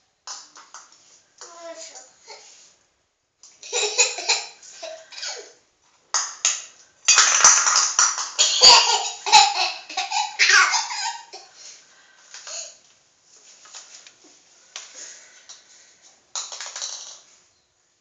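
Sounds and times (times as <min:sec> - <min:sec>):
young child laughing: 0:08.6 - 0:11.5.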